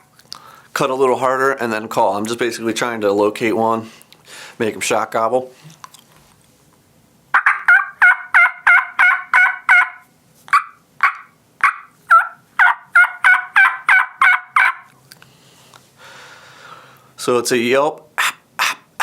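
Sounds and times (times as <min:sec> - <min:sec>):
turkey call yelps: 0:07.3 - 0:15.0, 0:18.2 - 0:19.0.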